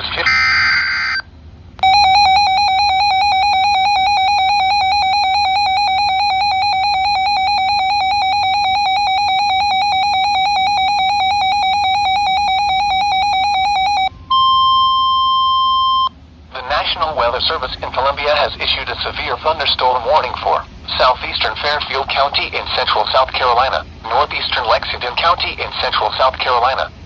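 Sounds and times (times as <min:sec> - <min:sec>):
steady high alarm tone: 0:00.2 - 0:01.2, 0:01.8 - 0:16.1
rapidly pulsing buzzer tone: 0:01.8 - 0:14.1.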